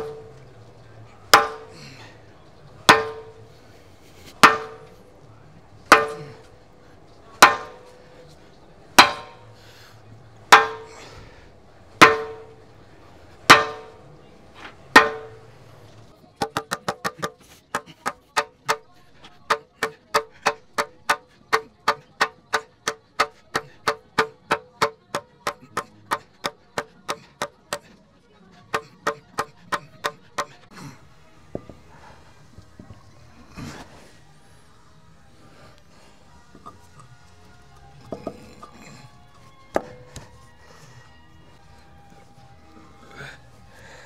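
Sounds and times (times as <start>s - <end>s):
hammer striking steel: 0.0s - 0.5s, 1.2s - 2.1s, 2.8s - 5.1s, 5.8s - 6.6s, 7.3s - 9.6s, 10.4s - 11.4s, 12.0s - 12.8s, 13.4s - 27.9s, 28.7s - 30.7s.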